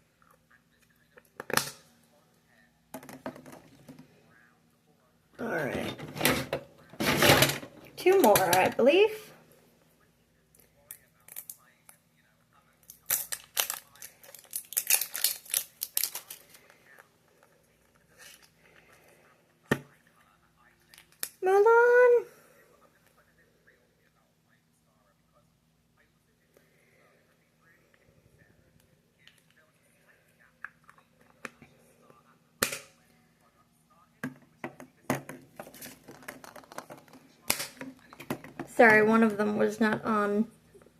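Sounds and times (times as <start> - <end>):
plastic packaging crinkling: 12.9 - 17.0.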